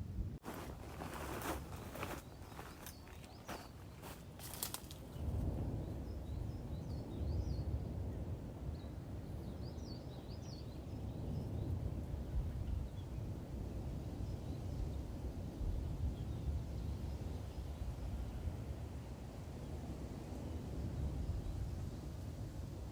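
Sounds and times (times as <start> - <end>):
low outdoor rumbling: 0.0 - 5.8.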